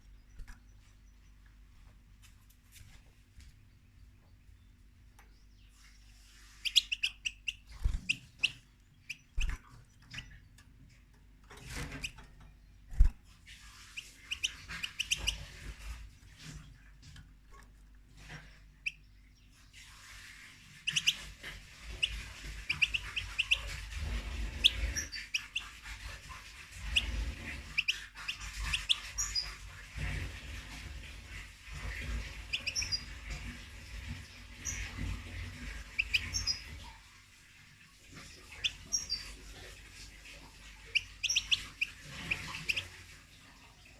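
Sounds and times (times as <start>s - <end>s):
goldfinch chirping: 5.3s - 10.6s, 13.8s - 15.9s, 18.8s - 20.2s, 20.8s - 29.9s, 31.8s - 33.4s, 34.2s - 36.8s, 38.2s - 40.0s, 40.7s - 43.1s.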